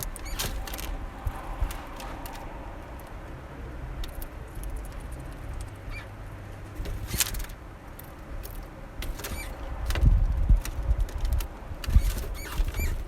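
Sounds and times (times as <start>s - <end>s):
low steady rumble: 0.0s - 9.0s.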